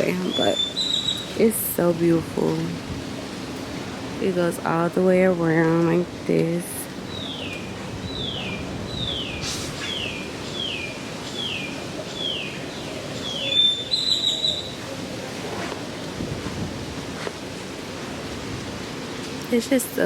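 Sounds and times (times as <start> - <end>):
steady background hiss: 0.0 - 20.0.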